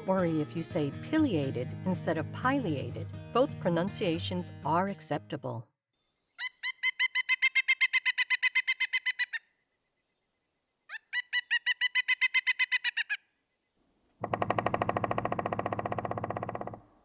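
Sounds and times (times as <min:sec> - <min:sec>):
woodpecker calling: 0:06.4 - 0:09.4, 0:10.9 - 0:13.2, 0:14.2 - 0:17.0.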